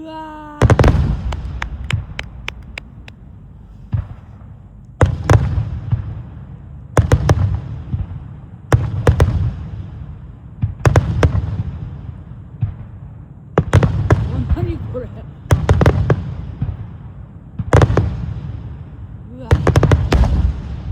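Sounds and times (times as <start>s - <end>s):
low rumbling echo: 0.0s - 6.7s
firework shells bursting: 0.6s - 4.3s.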